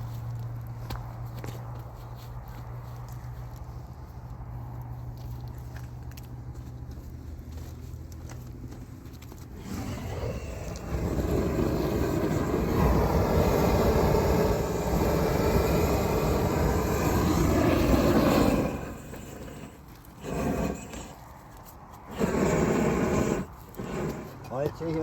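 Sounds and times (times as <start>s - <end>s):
gas torch roaring: 9.4s - 25.0s.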